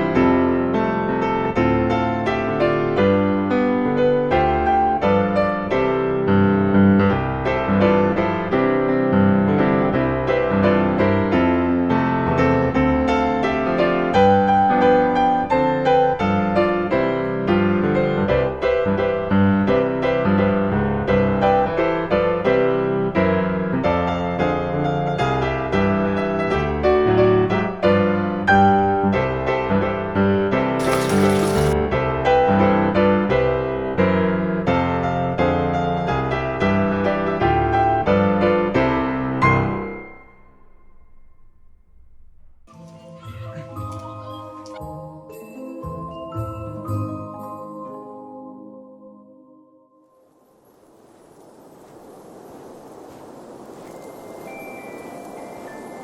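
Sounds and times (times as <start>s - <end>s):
background piano music: 0.0s - 29.5s, 42.7s - 50.5s, 53.9s - 56.0s.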